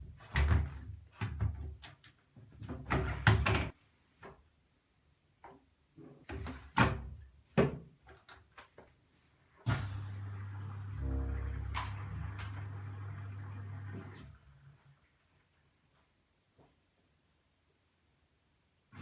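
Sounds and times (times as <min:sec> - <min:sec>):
washing machine knocks and clunks: 0:09.7 - 0:12.8.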